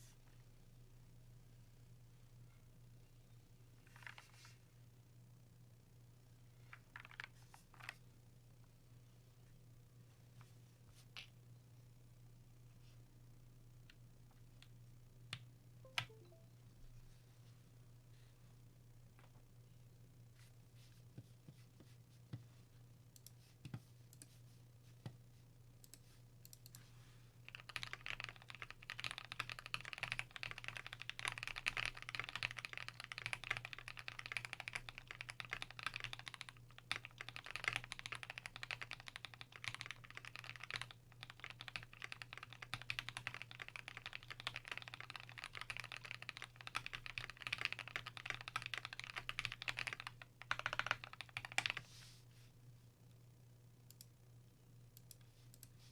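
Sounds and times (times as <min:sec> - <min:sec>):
faint low hum: 0:00.0 - 0:55.9
mechanical keyboard typing: 0:06.9 - 0:08.0, 0:27.5 - 0:51.8.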